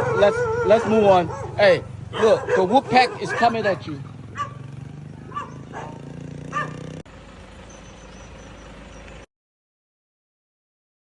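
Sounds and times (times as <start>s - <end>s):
dogs barking: 0.0s - 7.0s.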